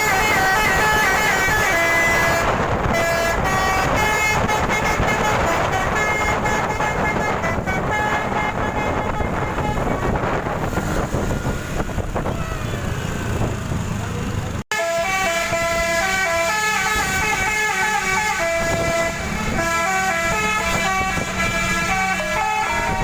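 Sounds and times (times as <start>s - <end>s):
musical bus horn melody: 0.0s - 10.6s, 14.7s - 23.0s
engine and street noise: 0.0s - 23.0s.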